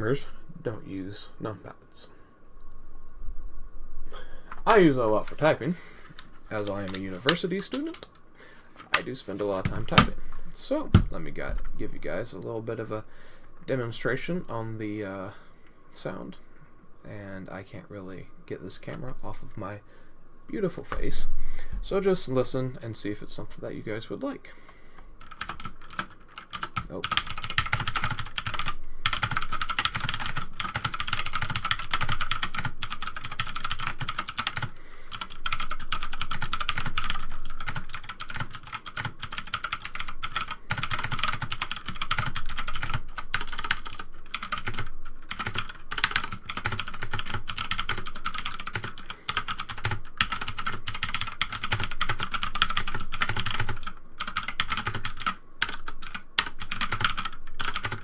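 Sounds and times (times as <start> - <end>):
fast mechanical keyboard typing: 6.5 - 8.0, 8.9 - 10.2, 25.2 - 58.0.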